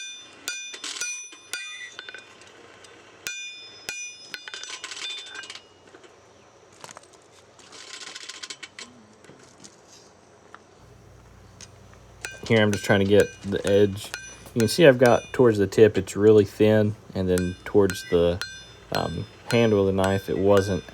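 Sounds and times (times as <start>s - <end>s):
hammer striking steel on anvil: 0.5s - 2.2s, 3.3s - 4.8s, 10.9s - 20.9s
light clattering hammer taps: 10.9s - 20.9s.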